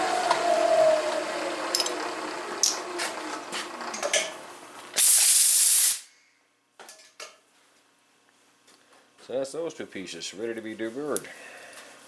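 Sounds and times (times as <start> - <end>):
milling machine spindle whine: 0.0 - 4.0
compressed air hiss: 5.0 - 6.1.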